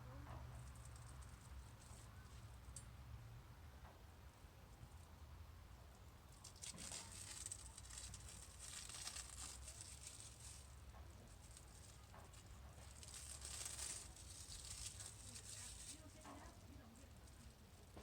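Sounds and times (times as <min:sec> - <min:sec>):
scratchy rustling and rubbing: 0:06.3 - 0:18.0.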